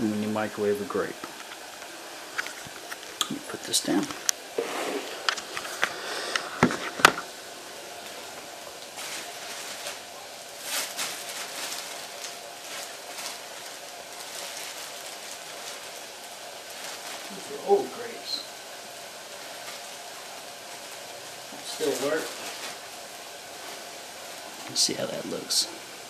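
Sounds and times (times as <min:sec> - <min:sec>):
objects knocking on hard surface: 0:06.6 - 0:07.3
soft rustling and handling: 0:08.0 - 0:18.2.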